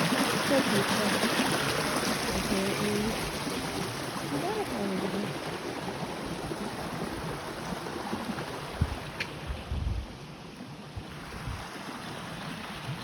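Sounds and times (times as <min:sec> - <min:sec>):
small waterfall rushing: 0:00.0 - 0:09.6, 0:10.5 - 0:13.0
wind buffeting microphone: 0:06.6 - 0:10.2.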